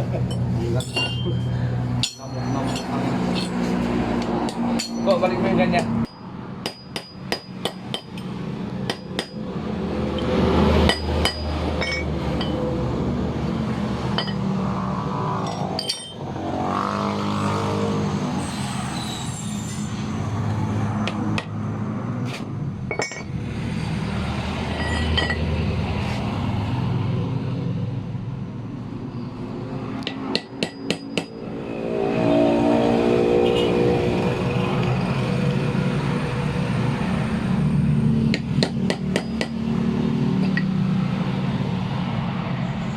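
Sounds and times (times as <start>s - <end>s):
hammer tapping on metal: 2.0s - 5.2s, 8.9s - 9.4s.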